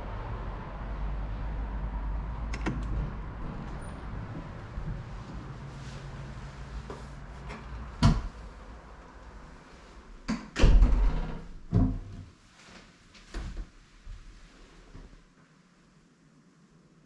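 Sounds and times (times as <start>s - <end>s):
knocks and clunks: 10.3s - 12.3s.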